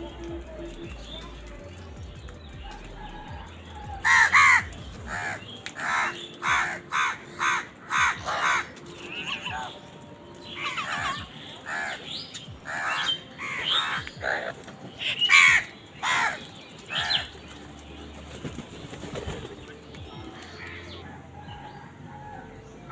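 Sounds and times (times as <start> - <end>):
crows cawing: 2.7 - 9.8, 10.5 - 17.4.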